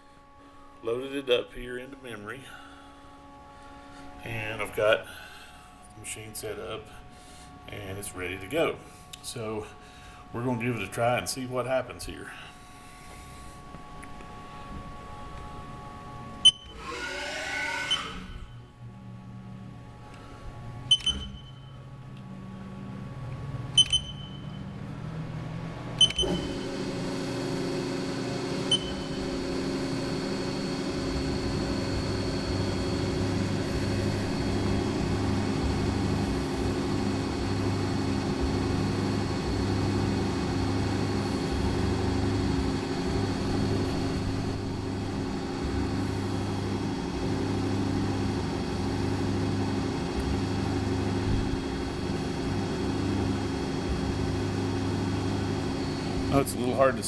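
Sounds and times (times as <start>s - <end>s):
milling machine spindle whine: 0.8s - 19.6s, 21.0s - 57.0s
short sharp beeps: 20.9s - 21.8s, 23.8s - 24.7s, 26.0s - 26.5s, 28.7s - 29.1s.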